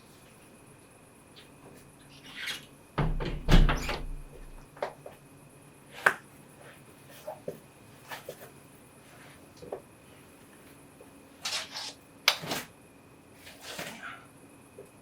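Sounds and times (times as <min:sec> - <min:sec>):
knocks and thuds: 0:03.0 - 0:04.6.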